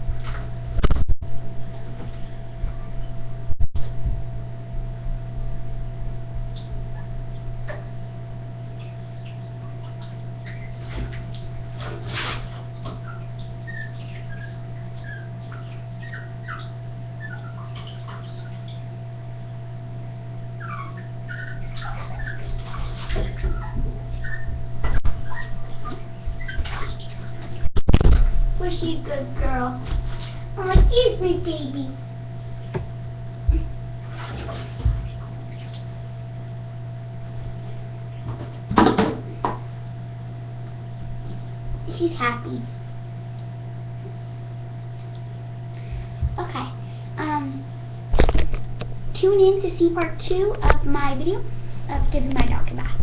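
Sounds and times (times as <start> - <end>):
steady low hum: 0.0 - 53.0
small dog whimpering: 13.0 - 17.8, 20.6 - 22.6, 23.4 - 26.7.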